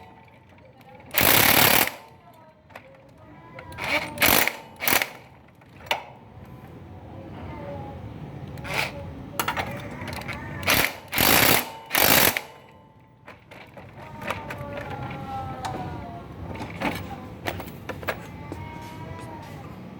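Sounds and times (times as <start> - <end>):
impact driver hammering: 10.6 - 12.6.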